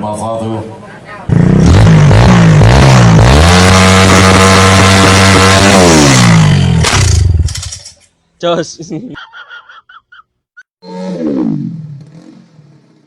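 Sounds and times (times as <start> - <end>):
motorcycle engine revving: 1.3 - 7.9, 10.8 - 13.0.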